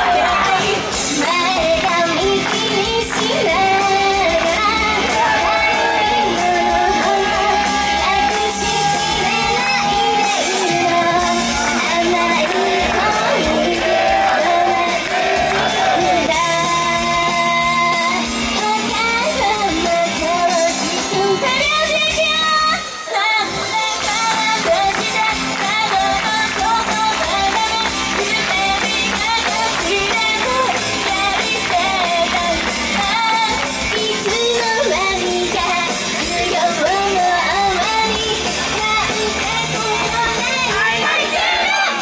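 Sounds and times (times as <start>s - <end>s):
audience shouts: 0.0s - 1.0s, 4.8s - 16.4s, 40.5s - 42.0s
female vocals singing pop: 0.0s - 42.0s.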